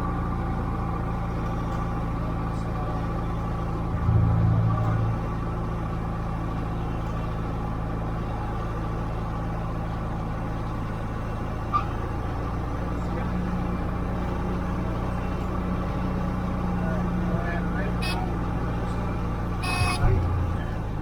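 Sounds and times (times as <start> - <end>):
airplane engine and propeller droning: 2.6 - 6.2.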